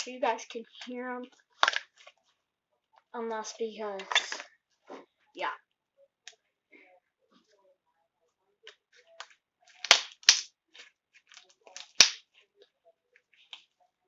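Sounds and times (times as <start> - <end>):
slime worked by hand crackling: 9.2 - 12.3.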